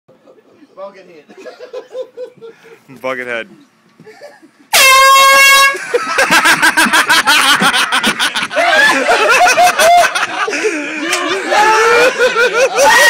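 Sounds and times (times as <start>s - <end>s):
people laughing hard: 1.3s - 2.8s, 4.0s - 4.8s, 5.6s - 13.0s.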